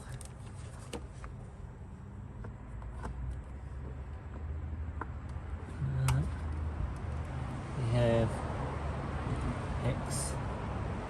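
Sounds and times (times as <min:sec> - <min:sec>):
engine parts clicking and knocking: 0:02.3 - 0:07.4.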